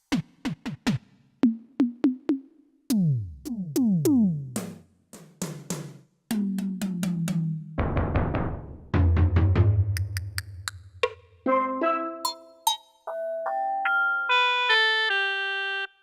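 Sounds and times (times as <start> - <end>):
electronic drum hits: 6.3 - 10.2.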